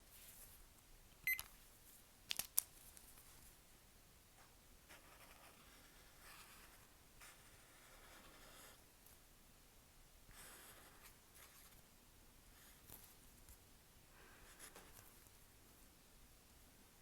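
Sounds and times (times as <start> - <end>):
marker scratching on paper: 4.9 - 8.8.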